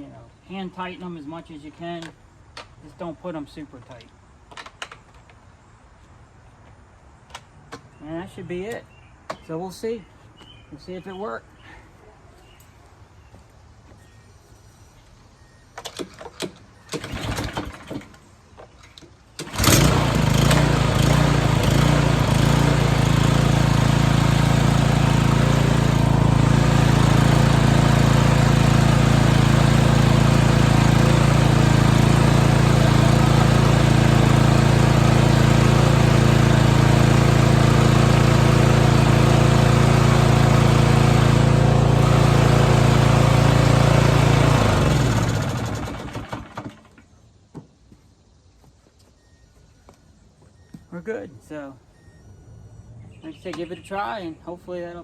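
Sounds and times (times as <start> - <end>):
lawn mower engine running: 15.9 - 18.2, 19.3 - 47.1.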